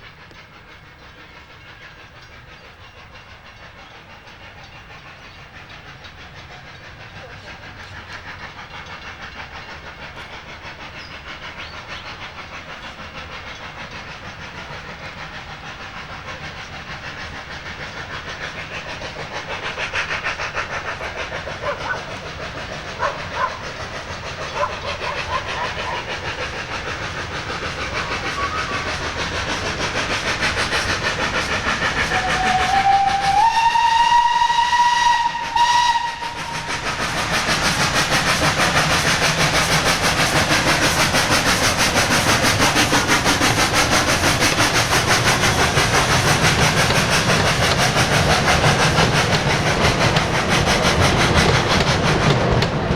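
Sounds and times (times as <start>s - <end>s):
steam locomotive chuffing: 0.0s - 52.9s
steam whistle: 32.0s - 36.9s.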